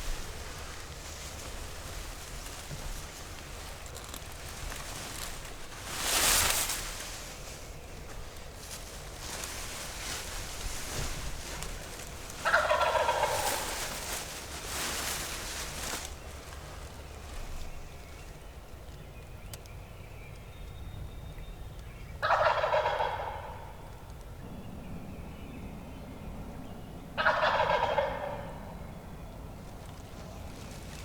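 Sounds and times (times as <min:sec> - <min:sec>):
turkey gobbling: 0:12.2 - 0:14.3, 0:22.2 - 0:24.0, 0:27.2 - 0:28.8.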